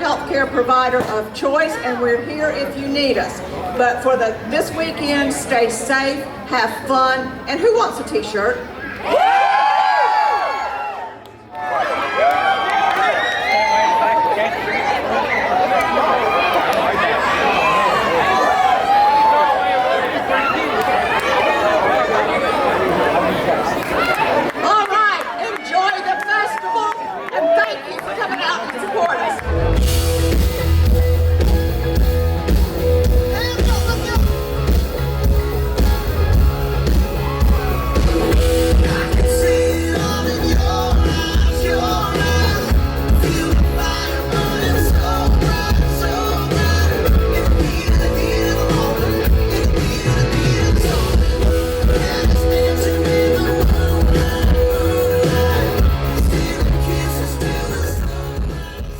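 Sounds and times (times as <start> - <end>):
rock music with singing and guitar: 29.4 - 58.9.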